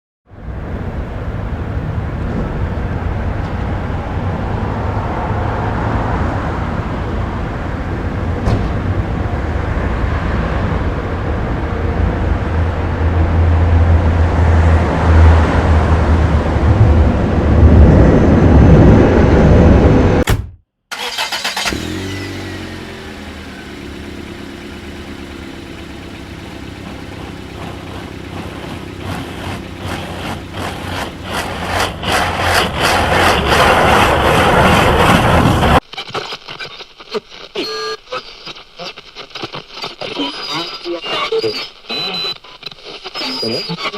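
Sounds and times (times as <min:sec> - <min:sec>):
road and engine rumble in car: 0:00.3 - 0:20.2, 0:20.9 - 0:35.8.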